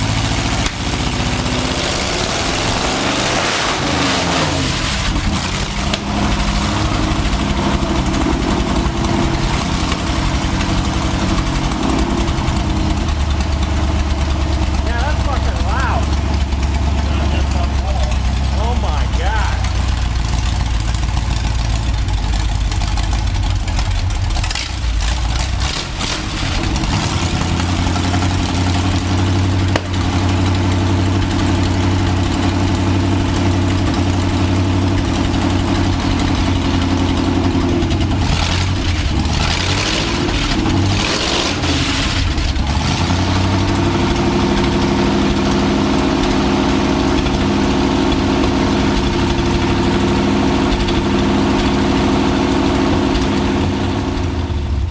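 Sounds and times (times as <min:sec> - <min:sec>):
car engine idling and revving: 0:00.0 - 0:54.9.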